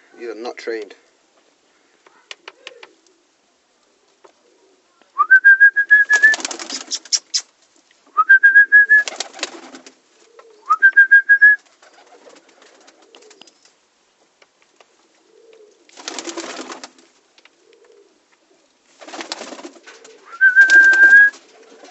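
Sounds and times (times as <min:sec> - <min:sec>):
pigeons cooing: 0:01.8 - 0:05.0, 0:09.0 - 0:10.8, 0:11.8 - 0:13.6, 0:14.7 - 0:21.9
high whistle-like tones: 0:05.2 - 0:06.9, 0:08.2 - 0:09.1, 0:10.7 - 0:11.6, 0:20.3 - 0:21.4
pigeons scuffling: 0:05.9 - 0:07.8, 0:08.9 - 0:11.0, 0:11.6 - 0:13.8, 0:14.4 - 0:18.1, 0:18.9 - 0:21.9.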